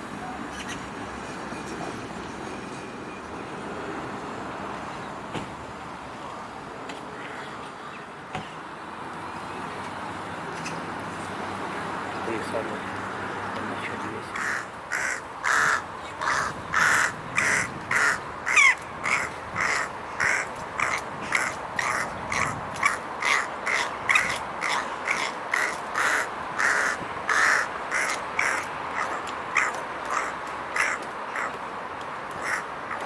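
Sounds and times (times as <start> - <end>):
bird harsh calls: 14.3 - 31.6, 32.4 - 33.0.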